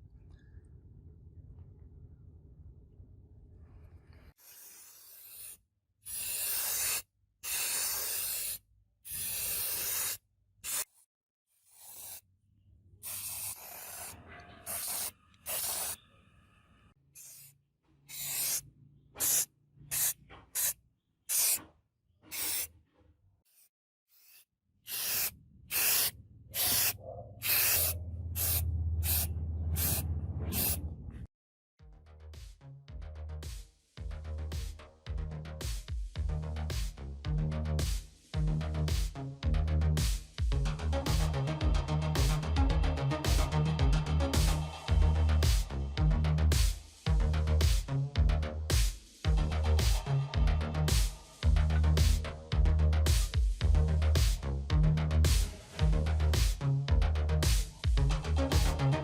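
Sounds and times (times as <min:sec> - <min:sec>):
spray hissing in bursts: 0:06.1 - 0:10.8, 0:11.7 - 0:12.2, 0:13.0 - 0:16.0, 0:18.1 - 0:18.6, 0:19.2 - 0:20.7, 0:21.3 - 0:21.6, 0:22.3 - 0:22.7, 0:24.2 - 0:30.0
low hum: 0:27.0 - 0:31.3.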